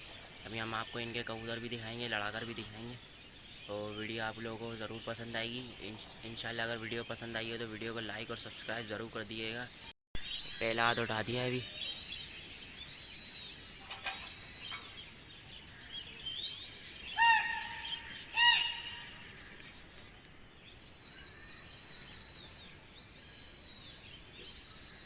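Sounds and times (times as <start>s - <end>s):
birds chirping: 0.0s - 25.0s
loud short bird calls: 15.6s - 20.2s.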